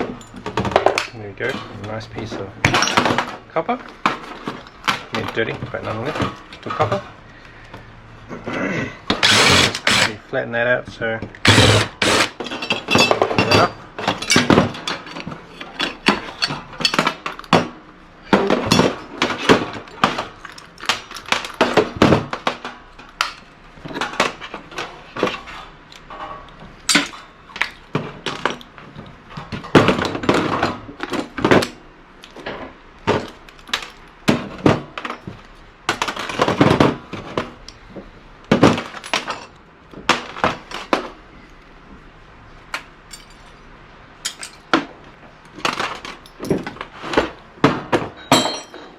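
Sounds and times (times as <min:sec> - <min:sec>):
hand tools clanking on sheet metal: 0:11.5 - 0:17.3.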